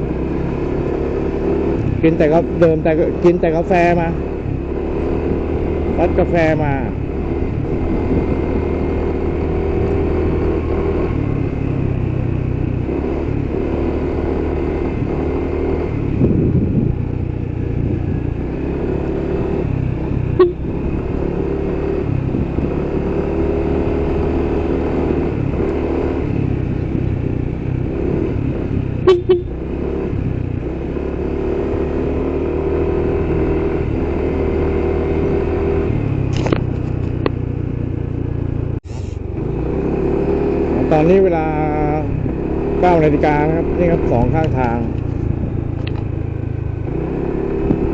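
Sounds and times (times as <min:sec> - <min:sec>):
vehicle engine running: 0:00.0 - 0:32.7, 0:36.0 - 0:47.9
road noise: 0:00.0 - 0:47.9.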